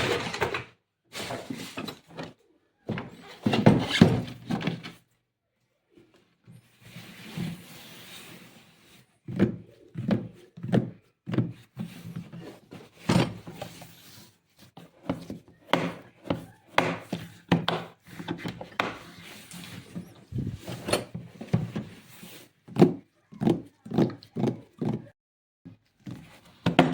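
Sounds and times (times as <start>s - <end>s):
scraping and rubbing: 17.1s - 22.6s.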